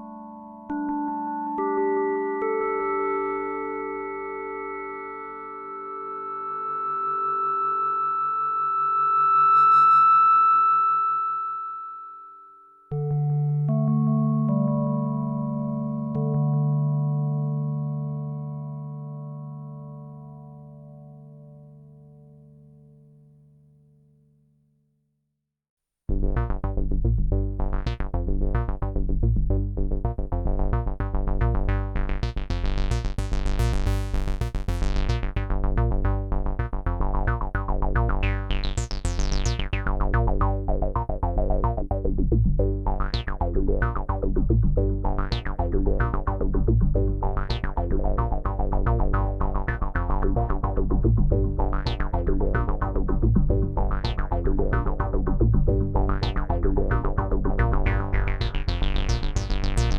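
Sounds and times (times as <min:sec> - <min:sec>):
synthesizer pattern with echo: 0:00.0 - 0:08.0
heavy synth bass line: 0:26.1 - 0:59.9.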